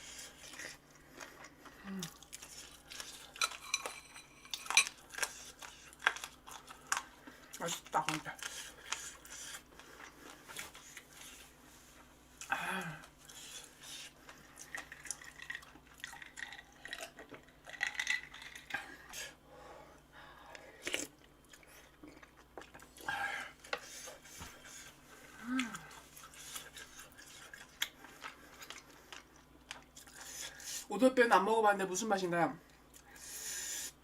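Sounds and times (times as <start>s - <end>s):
person chewing and crunching: 0.0s - 11.6s, 12.3s - 19.3s, 20.5s - 30.9s
person humming: 1.8s - 2.2s, 12.5s - 13.0s, 25.3s - 25.9s.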